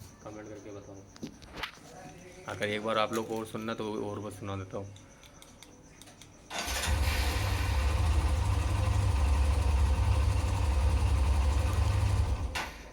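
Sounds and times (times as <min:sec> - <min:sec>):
motorcycle engine starting and idling: 0:06.5 - 0:12.9.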